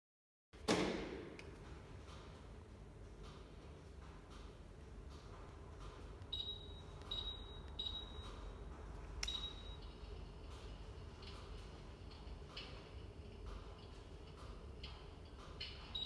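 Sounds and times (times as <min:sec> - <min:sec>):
appliance short high beeps: 0:06.4 - 0:08.4, 0:09.2 - 0:09.8.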